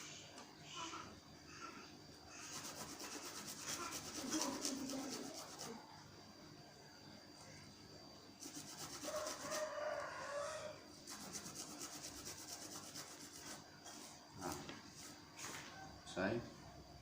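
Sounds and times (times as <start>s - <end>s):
hand grater scraping: 2.5s - 5.8s, 8.4s - 9.6s.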